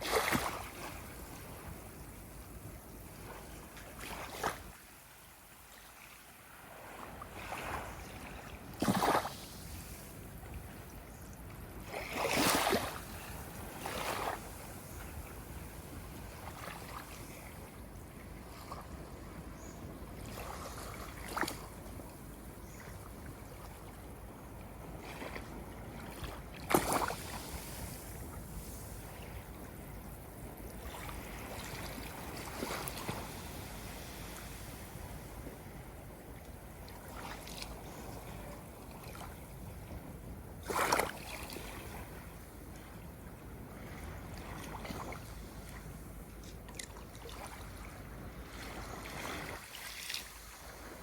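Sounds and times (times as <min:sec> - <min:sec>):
small wave splashes: 0:00.0 - 0:01.6, 0:03.2 - 0:04.8, 0:05.7 - 0:10.1, 0:11.8 - 0:17.6, 0:25.0 - 0:29.4, 0:30.8 - 0:35.4, 0:40.6 - 0:42.3, 0:46.7 - 0:51.0
ocean water lapping: 0:00.0 - 0:11.0, 0:11.8 - 0:51.0.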